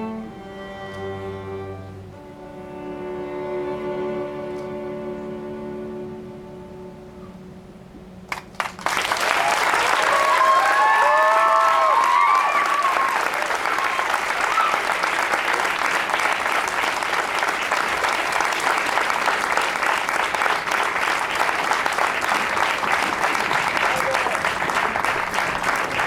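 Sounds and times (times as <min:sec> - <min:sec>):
audience applauding: 0:08.3 - 0:26.0
people cheering: 0:08.6 - 0:26.0.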